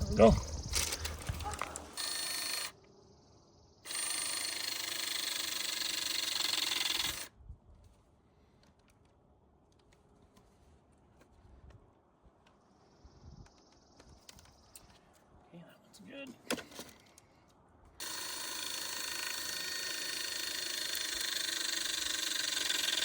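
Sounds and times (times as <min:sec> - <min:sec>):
hydraulic crimping tool motor whine: 0:00.0 - 0:02.7, 0:03.9 - 0:07.3, 0:18.0 - 0:23.0.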